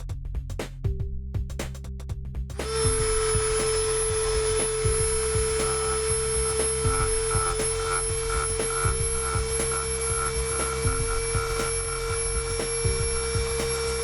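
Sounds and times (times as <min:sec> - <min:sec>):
background music with a beat: 0:00.0 - 0:14.0
rotary tool sanding whine: 0:02.6 - 0:14.0.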